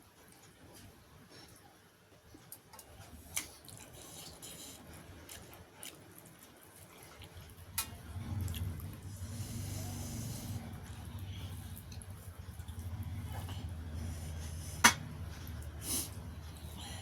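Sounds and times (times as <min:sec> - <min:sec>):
wet chewing: 0:02.5 - 0:17.0
low machine hum: 0:07.4 - 0:17.0.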